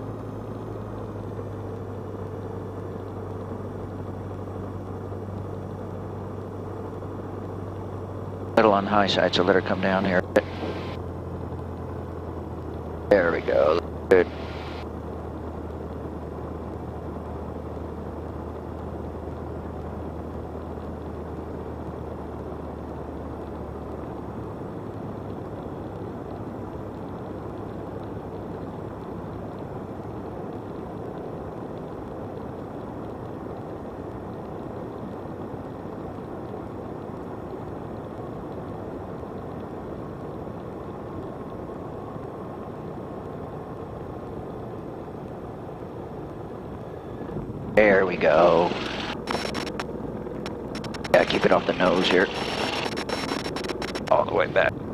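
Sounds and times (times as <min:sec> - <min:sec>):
airplane engine and propeller droning: 0:00.0 - 0:54.9
low engine hum: 0:00.0 - 0:54.9.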